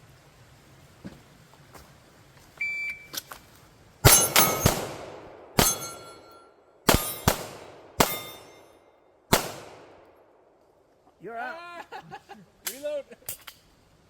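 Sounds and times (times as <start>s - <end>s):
pistol shots: 4.0s - 8.7s, 9.3s - 10.3s
steel targets ringing: 4.0s - 8.8s.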